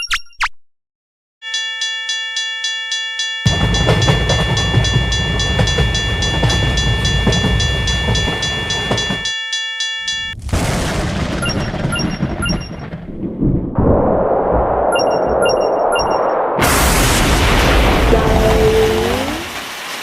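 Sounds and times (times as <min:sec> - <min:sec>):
level crossing alarm ringing: 0:01.4 - 0:10.4
loud burst of noise: 0:03.5 - 0:09.2, 0:10.4 - 0:20.0
train rumbling past: 0:03.5 - 0:09.2.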